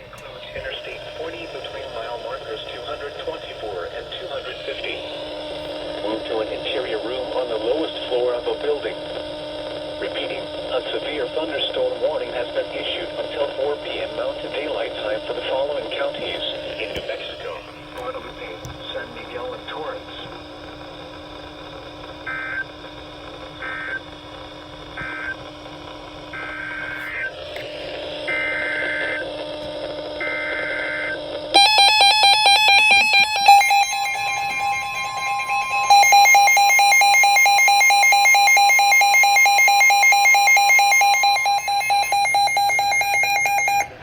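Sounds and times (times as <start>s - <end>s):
warbling digital data bursts: 30.9s - 43.9s
loud two-tone alert signal: 31.6s - 44.0s.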